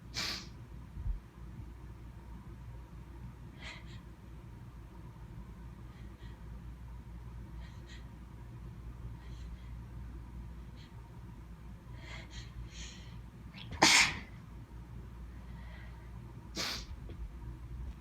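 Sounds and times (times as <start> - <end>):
person sneezing: 13.7 - 14.3, 16.6 - 16.9.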